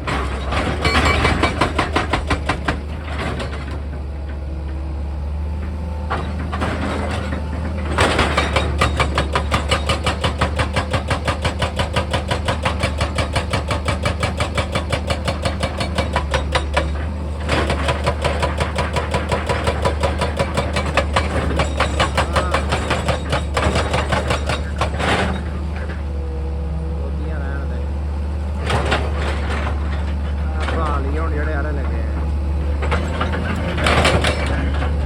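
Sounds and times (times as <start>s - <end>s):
diesel engine hum: 0.0s - 11.3s, 12.0s - 35.0s
hydraulic hammer hammering rock: 0.2s - 3.8s, 7.8s - 25.9s.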